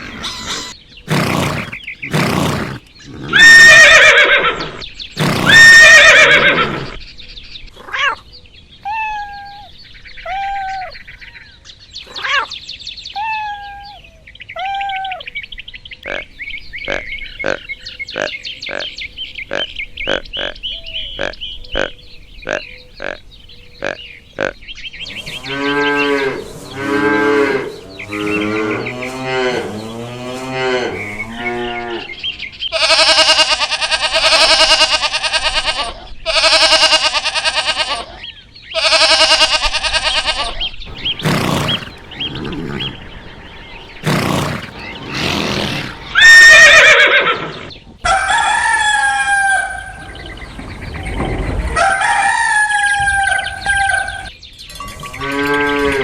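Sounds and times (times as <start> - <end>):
farm animals calling: 0.0 - 7.1, 16.0 - 54.4
rooster crowing: 48.1 - 50.1, 51.8 - 54.3.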